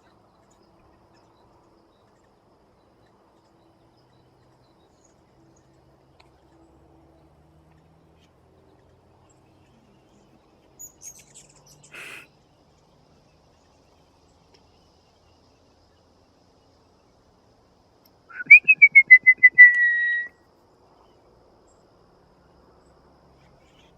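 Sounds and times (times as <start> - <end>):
bird whistled call: 18.3 - 20.4
faint high chirps: 18.3 - 20.4.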